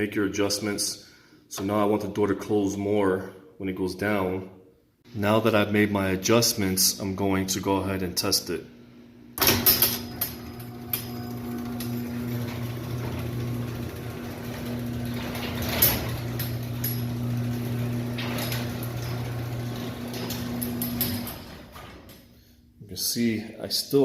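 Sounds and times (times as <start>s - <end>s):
garage door opener motor humming: 9.0s - 22.4s
door rattling: 9.4s - 22.2s.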